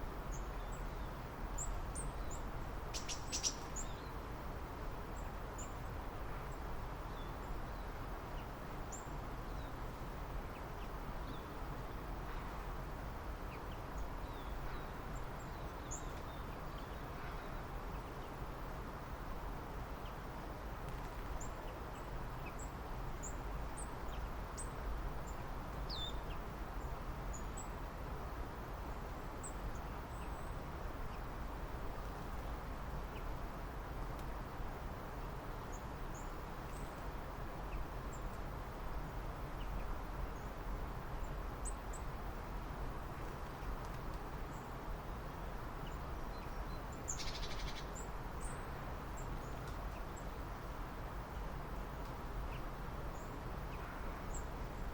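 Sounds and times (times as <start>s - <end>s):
low background hiss and rumble: 0.0s - 54.9s
small birds chirping: 0.3s - 4.3s, 13.4s - 18.5s, 19.9s - 27.8s, 43.0s - 54.9s.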